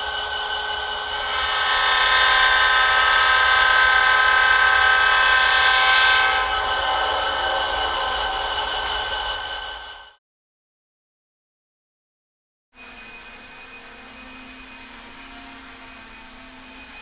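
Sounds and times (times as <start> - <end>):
train horn chord: 0.0 - 10.1.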